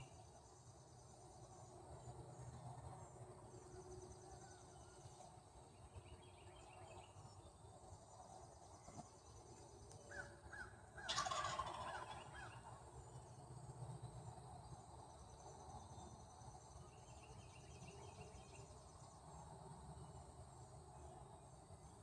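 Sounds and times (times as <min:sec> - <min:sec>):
wild turkey gobbling: 0:10.1 - 0:12.8.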